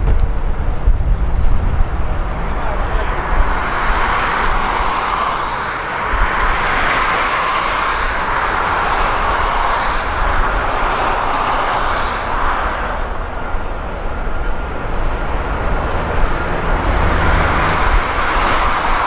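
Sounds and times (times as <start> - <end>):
low rumble: 0.0 - 19.0
rushing vehicle noise: 0.0 - 19.0.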